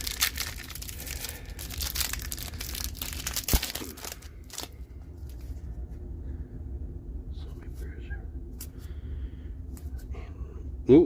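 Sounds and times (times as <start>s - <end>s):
foil wrapper crinkling and tearing: 0.0s - 4.8s.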